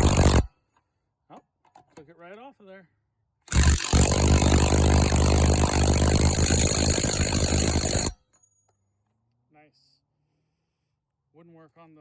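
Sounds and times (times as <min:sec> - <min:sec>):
impact wrench hammering: 0:00.0 - 0:00.5, 0:03.5 - 0:08.2.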